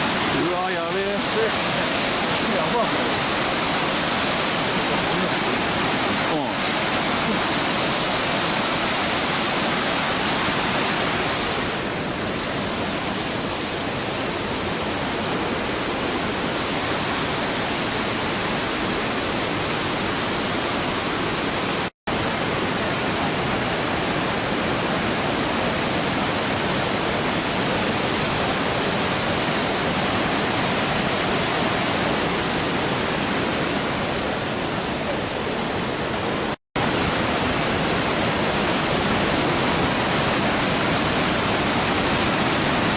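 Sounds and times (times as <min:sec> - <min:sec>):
waterfall rushing: 0:00.0 - 0:42.9.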